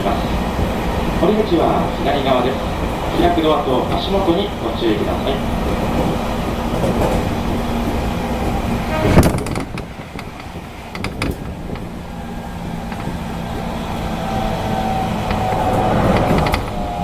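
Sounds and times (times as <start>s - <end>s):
train equipment hum: 0.0s - 17.0s
train running noise: 0.0s - 17.0s
faint tones: 8.7s - 10.6s.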